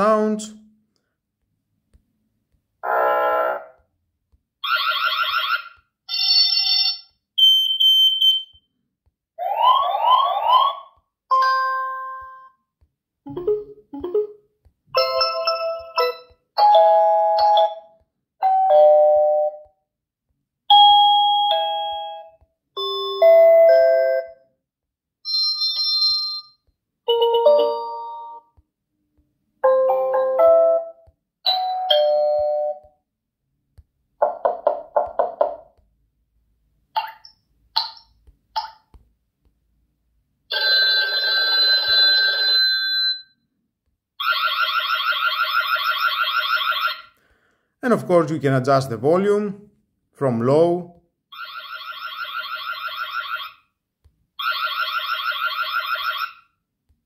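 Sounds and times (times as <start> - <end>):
doorbell chimes and melodies: 11.3 - 12.5, 15.0 - 19.7, 20.7 - 24.5, 25.3 - 28.5, 29.6 - 32.9.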